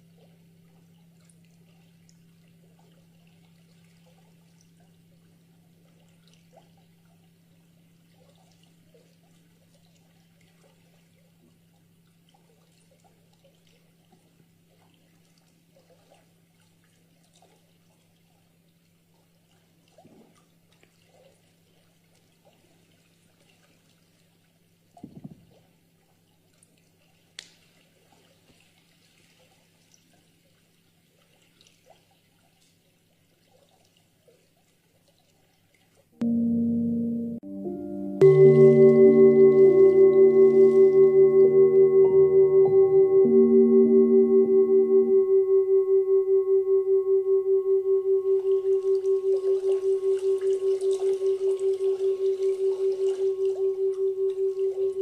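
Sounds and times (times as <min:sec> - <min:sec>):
steady low hum: 0:36.2 - 0:55.0
water dripping and trickling: 0:48.3 - 0:55.0.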